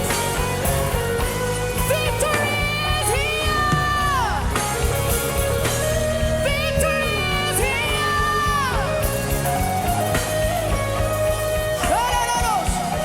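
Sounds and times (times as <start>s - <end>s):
band with guitar and heavy bass: 0.0s - 13.0s
person singing long wordless notes: 0.0s - 13.0s.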